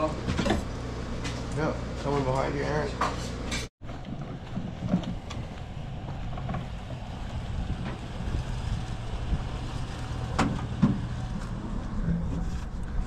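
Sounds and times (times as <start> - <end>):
vehicle engine rumbling: 3.8 - 13.0.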